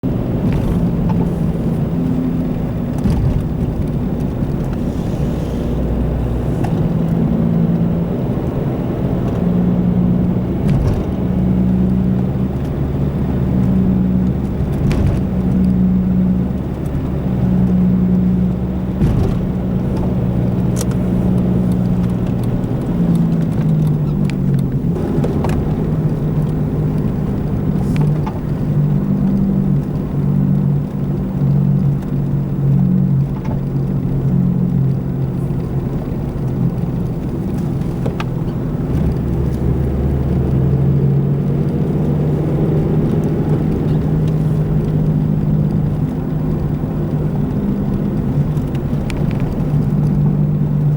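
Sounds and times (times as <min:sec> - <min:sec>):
road rumble: 0:00.0 - 0:50.9
short thumps from road: 0:00.3 - 0:07.5, 0:10.0 - 0:30.3.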